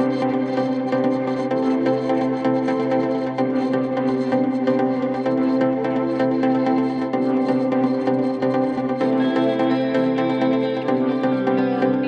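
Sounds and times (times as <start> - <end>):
ambient background music: 0.0 - 12.0.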